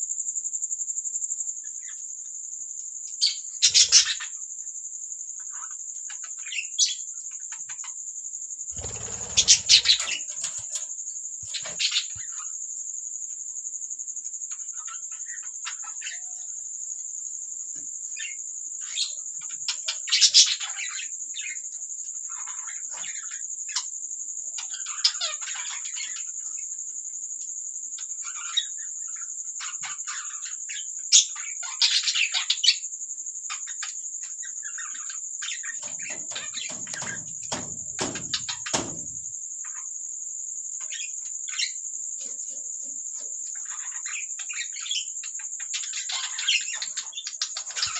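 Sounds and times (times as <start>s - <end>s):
budgies chirping: 3.6s - 4.2s, 8.8s - 10.9s, 11.5s - 12.2s, 35.5s - 39.1s
low knocks: 35.8s - 39.3s.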